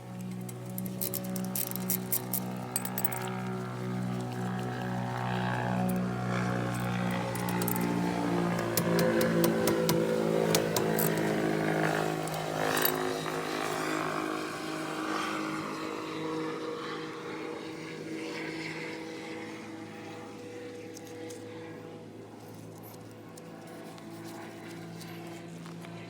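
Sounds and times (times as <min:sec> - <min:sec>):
vehicle engine hum: 0:00.0 - 0:16.4.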